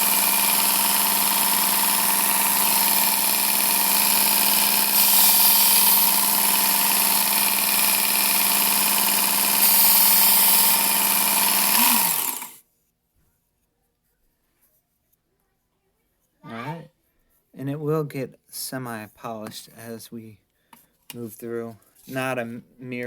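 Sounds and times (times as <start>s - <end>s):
belt sharpener motor humming: 0.0s - 12.6s
abrasive belt hissing: 11.6s - 12.5s.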